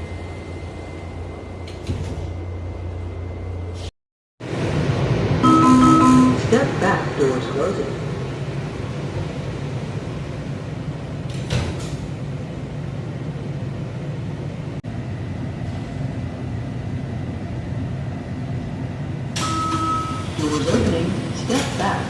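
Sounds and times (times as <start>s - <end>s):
low rumble of train: 0.0s - 22.0s
train doors shutting with a thump: 1.6s - 2.5s, 11.2s - 12.2s, 19.3s - 22.0s
faint steady high tone: 5.4s - 6.4s.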